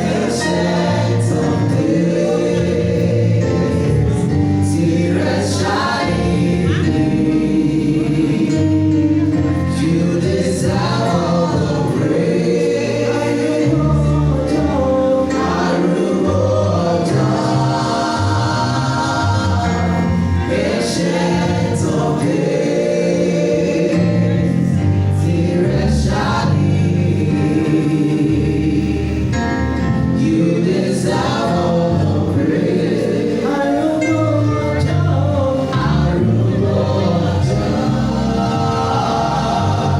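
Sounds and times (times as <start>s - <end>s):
band accompaniment: 0.0s - 39.9s
bass line: 0.0s - 39.9s
vocal group singing gospel: 0.0s - 39.9s.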